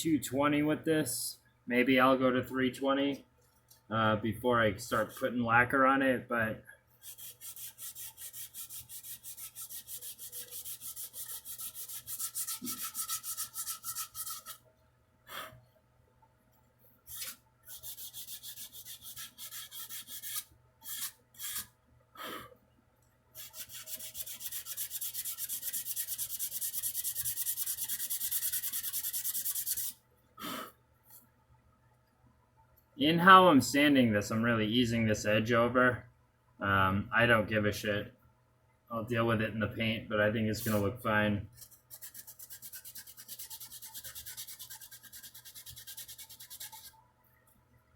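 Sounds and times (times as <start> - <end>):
sandpaper rubbing on wood: 7.0 - 14.6, 17.1 - 21.7, 23.4 - 30.0, 41.6 - 46.9.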